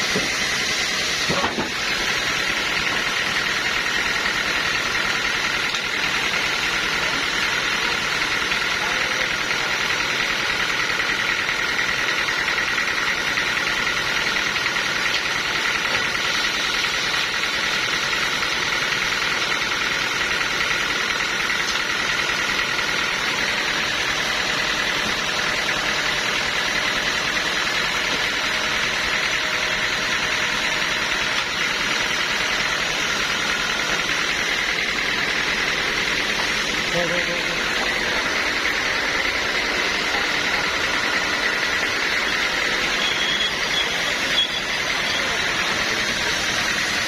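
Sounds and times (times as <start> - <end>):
saw machinery with high whine: 0.0 - 47.0.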